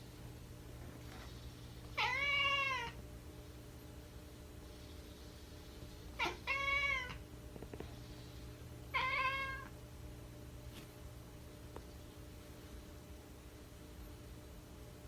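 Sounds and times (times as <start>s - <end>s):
cat meowing: 2.0s - 3.0s, 6.2s - 7.2s, 8.9s - 9.7s.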